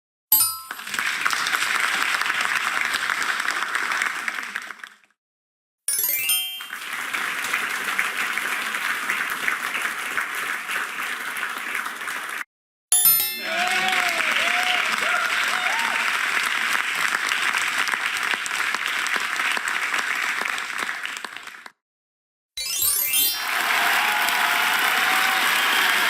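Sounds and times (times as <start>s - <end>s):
bright chime: 0.3s - 1.0s, 5.9s - 7.0s, 12.9s - 14.1s, 22.6s - 23.6s
applause sound effect: 0.4s - 5.2s, 6.0s - 21.8s, 22.6s - 26.0s.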